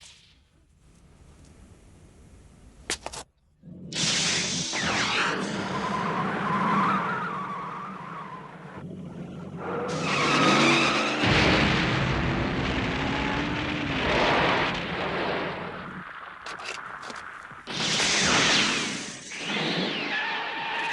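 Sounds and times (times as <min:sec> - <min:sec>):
tyres skidding: 0:05.3 - 0:17.6.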